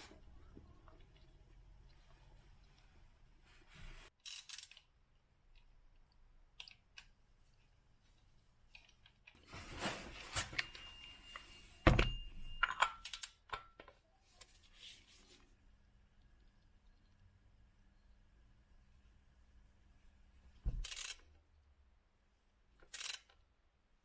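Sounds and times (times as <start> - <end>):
rustling: 9.4 - 12.5
clicks and scrapes of tools: 22.8 - 23.4.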